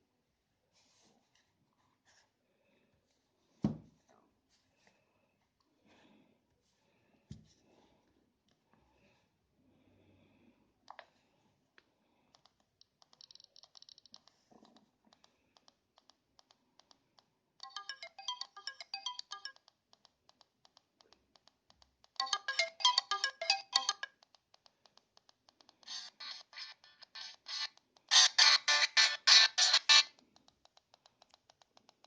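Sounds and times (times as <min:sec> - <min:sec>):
phone ringtone melody: 0:17.6 - 0:19.7, 0:22.2 - 0:24.2, 0:25.9 - 0:30.1.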